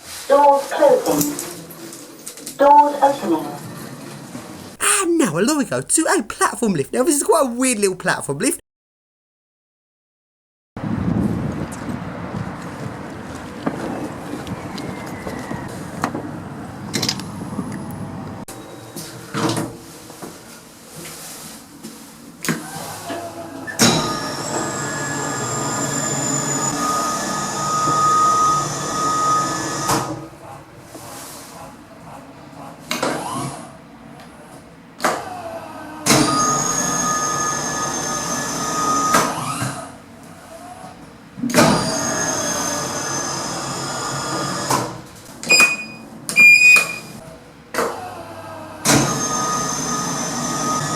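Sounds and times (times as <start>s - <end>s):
lift door and mechanism clunks: 45.5s - 47.1s.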